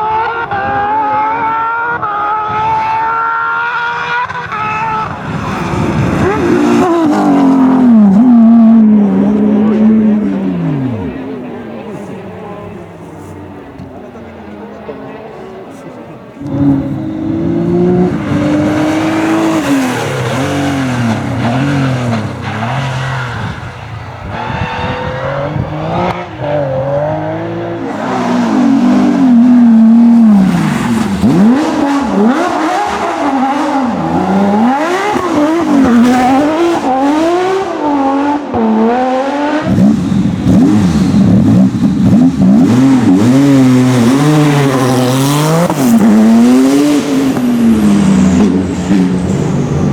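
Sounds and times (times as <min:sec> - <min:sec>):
race car engines revving: 0:00.0 - 0:49.9.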